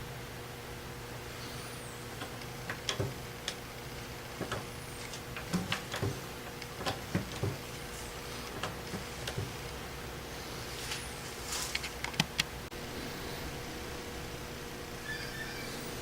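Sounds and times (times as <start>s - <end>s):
steady hum: 0.0s - 16.0s
tools clicking and knocking: 2.2s - 3.6s, 4.4s - 7.6s.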